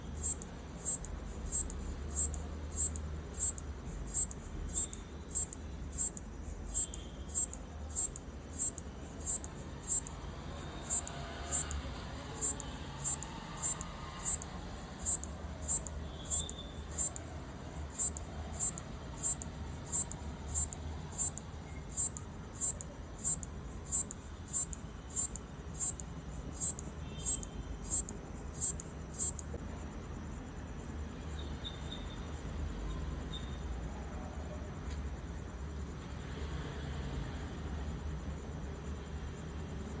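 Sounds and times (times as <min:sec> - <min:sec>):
locust chirping: 0:00.2 - 0:10.1, 0:10.8 - 0:11.8, 0:12.4 - 0:17.2, 0:17.9 - 0:26.0, 0:26.6 - 0:29.4.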